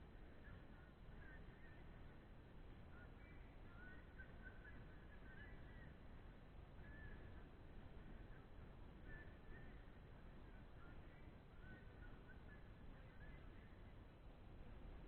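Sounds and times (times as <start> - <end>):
low steady rumble: 0.0 - 15.0
faint bird chirps: 2.9 - 6.0, 10.8 - 13.9.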